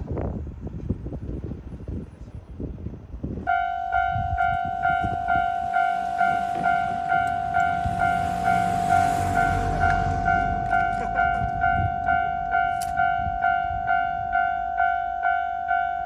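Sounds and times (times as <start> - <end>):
low rumbling noise: 0.0 - 15.0
level-crossing warning bell: 3.5 - 16.0.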